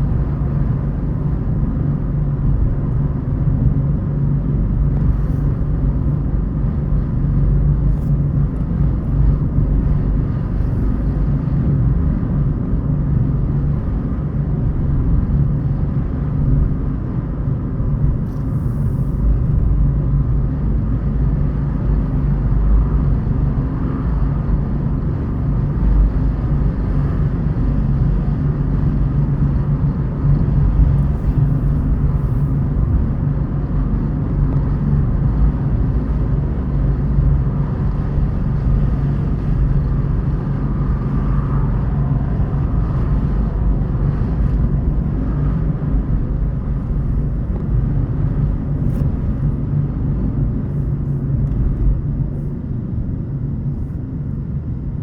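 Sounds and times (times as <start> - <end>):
car engine and tyre rumble: 0.0 - 55.0.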